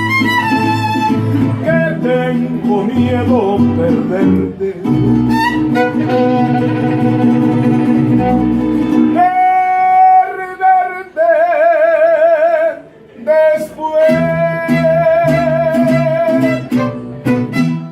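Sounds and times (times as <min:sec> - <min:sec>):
bass line: 0:00.0 - 0:09.4, 0:13.8 - 0:17.9
guitars strumming chords: 0:00.0 - 0:10.8, 0:13.6 - 0:17.9.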